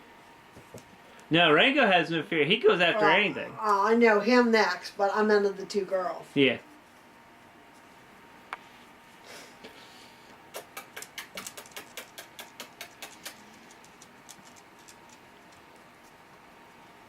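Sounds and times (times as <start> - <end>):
puppy claws clicking on floor: 10.6 - 16.2.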